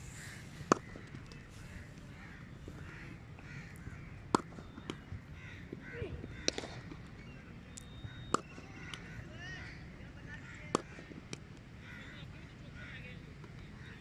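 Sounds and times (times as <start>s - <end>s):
birds calling: 0.0s - 14.0s
cricket bat hitting ball: 0.6s - 1.4s, 4.3s - 5.1s, 6.4s - 7.0s, 8.3s - 9.0s, 10.7s - 11.5s.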